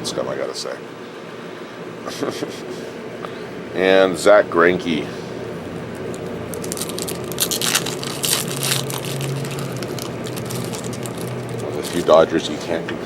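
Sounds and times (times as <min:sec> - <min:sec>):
steady low hum: 0:00.0 - 0:13.0
cards and wrappers crinkling: 0:06.1 - 0:12.2.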